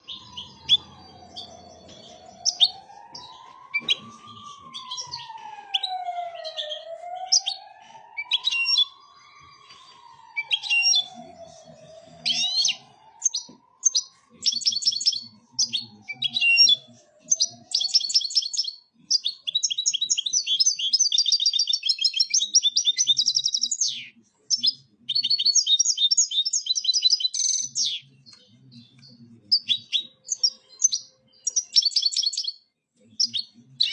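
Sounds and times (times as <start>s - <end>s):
goldfinch twittering song: 0.0s - 3.9s, 12.3s - 32.6s
faint rising and falling wail: 0.0s - 18.0s.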